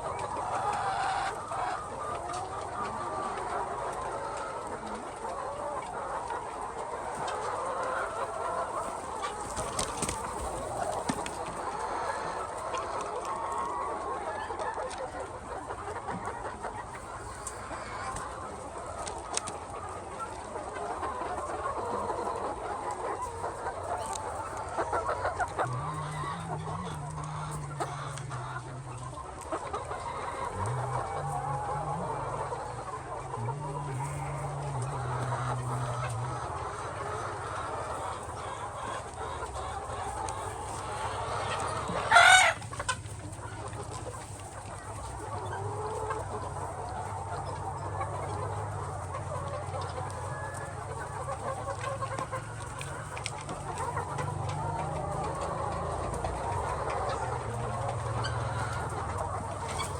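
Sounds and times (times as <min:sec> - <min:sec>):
chickens clucking: 0:00.0 - 0:59.9
low steady hum: 0:25.3 - 0:38.3.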